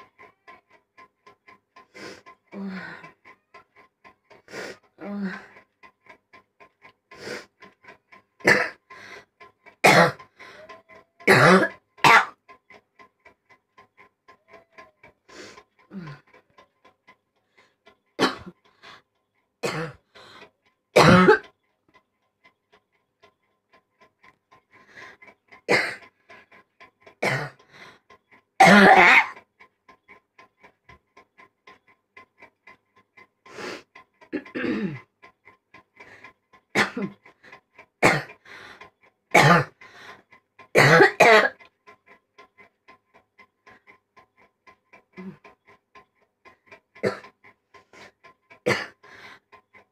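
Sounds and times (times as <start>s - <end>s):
person coughing: 8.4s - 8.8s, 11.3s - 12.3s, 19.6s - 20.0s, 21.0s - 21.4s, 28.6s - 29.4s, 34.4s - 35.0s, 36.8s - 37.1s, 39.4s - 39.7s, 40.8s - 41.6s, 48.7s - 49.0s
throat clearing: 34.4s - 35.1s, 47.0s - 47.3s.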